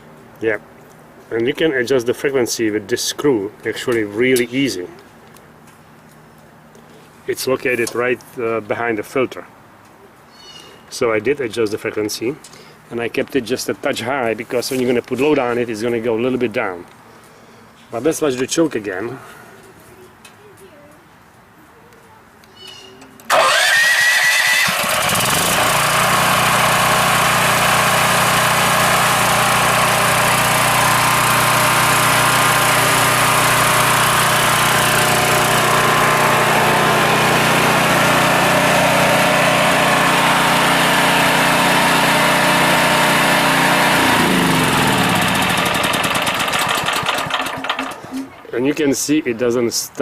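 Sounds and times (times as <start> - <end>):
generator engine starting and running: 23.3 - 48.5.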